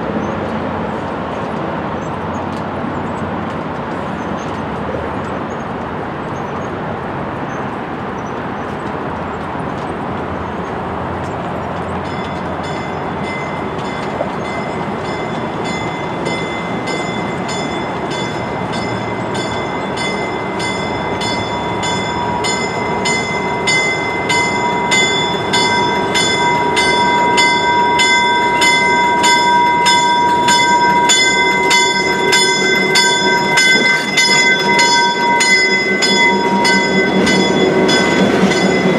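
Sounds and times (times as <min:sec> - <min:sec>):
train rumbling: 0:00.0 - 0:38.9
bell ringing: 0:12.0 - 0:38.9.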